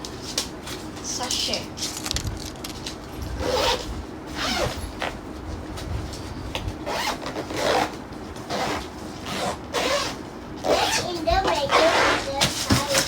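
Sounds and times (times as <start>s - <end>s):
suitcase zipper rasping: 3.4s - 5.2s, 6.8s - 11.0s, 11.7s - 12.3s.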